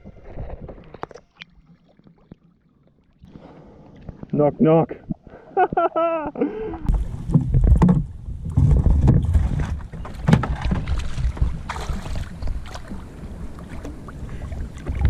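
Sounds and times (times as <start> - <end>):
water sloshing around kayak: 5.0 - 15.0
wind rumbling on microphone: 6.7 - 15.0.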